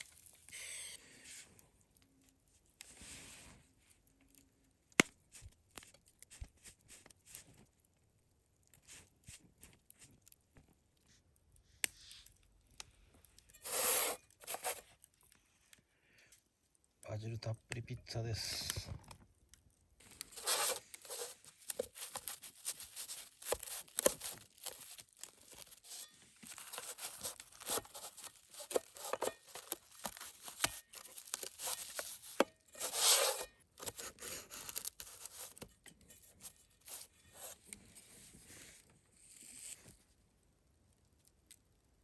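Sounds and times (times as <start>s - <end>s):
knife cutting crisp pizza: 13.6s - 14.8s, 20.4s - 35.6s.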